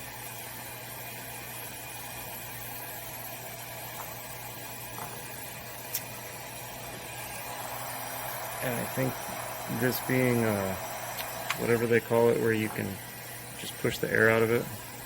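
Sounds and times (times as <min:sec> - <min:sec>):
heat gun blowing: 0:03.6 - 0:15.0.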